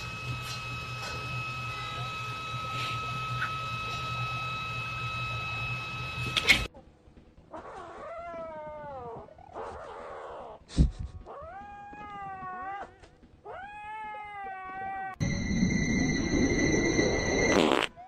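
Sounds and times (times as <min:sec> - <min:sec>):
steady high tone: 0:00.0 - 0:06.5, 0:15.2 - 0:17.9
cat yowling meows: 0:11.3 - 0:15.2.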